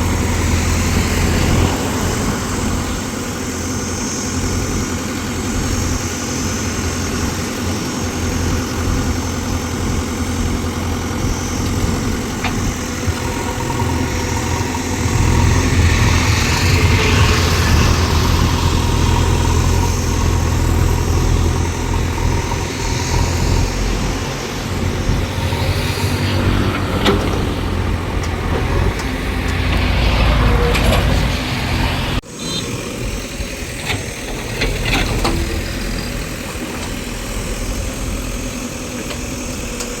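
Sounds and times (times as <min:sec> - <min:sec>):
heavy diesel engine running: 0:00.0 - 0:40.0.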